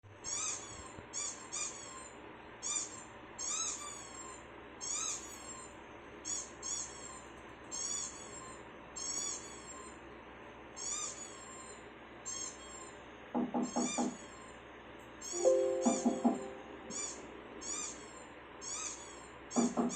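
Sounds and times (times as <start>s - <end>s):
small dog whining: 0.2s - 10.0s, 10.8s - 13.1s.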